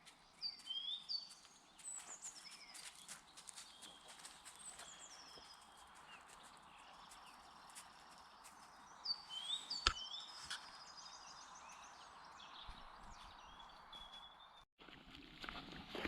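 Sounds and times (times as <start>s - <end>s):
songbirds singing: 0.0s - 14.7s.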